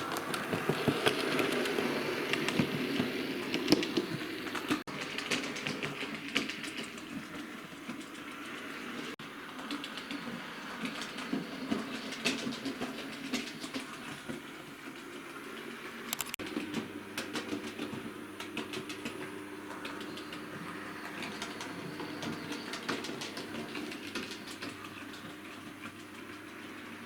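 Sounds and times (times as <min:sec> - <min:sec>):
model train motor whirring: 0:00.0 - 0:07.4
wheels clicking over rail joints: 0:00.0 - 0:27.0.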